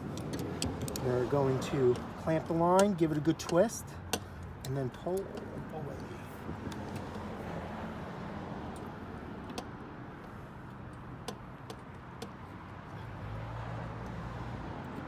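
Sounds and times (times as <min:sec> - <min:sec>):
light clicks and taps of tools: 0:00.0 - 0:07.3, 0:08.7 - 0:12.5, 0:14.0 - 0:14.2.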